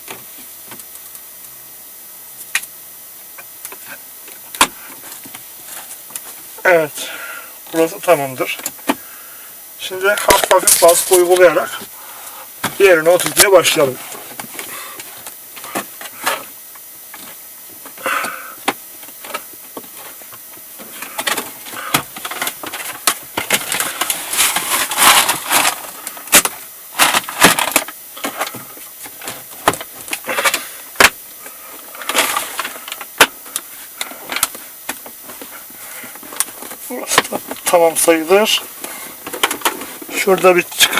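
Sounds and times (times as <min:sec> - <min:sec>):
plastic scraping against plastic: 0:20.9 - 0:29.5.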